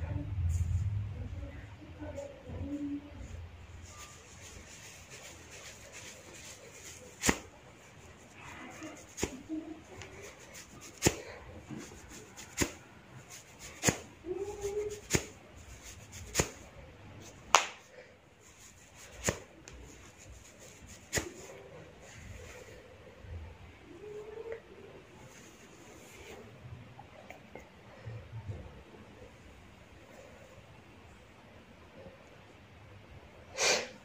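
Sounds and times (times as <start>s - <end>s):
hair cracking when tugged: 4.8s - 7.5s, 9.0s - 16.6s, 17.5s - 17.9s.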